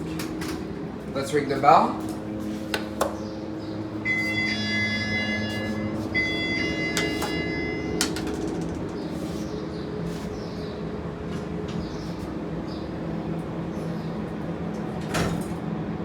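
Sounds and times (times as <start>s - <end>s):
elevator alarm bell: 3.9s - 8.9s.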